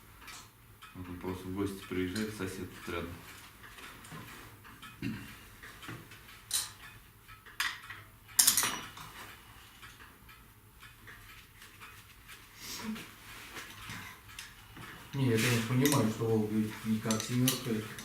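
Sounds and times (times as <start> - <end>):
small metal parts clinking: 7.6 - 9.0.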